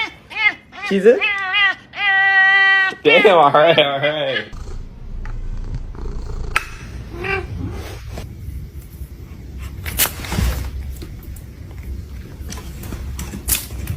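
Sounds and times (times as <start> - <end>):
cat meowing: 0.0 - 3.5
steady low rumble: 4.5 - 9.8.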